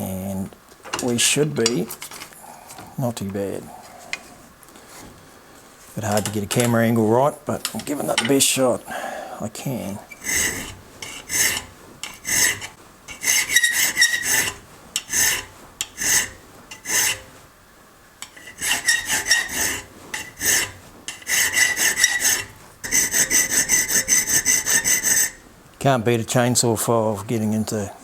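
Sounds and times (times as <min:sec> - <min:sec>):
hand file rasping on metal: 0:09.9 - 0:17.4, 0:18.2 - 0:25.5.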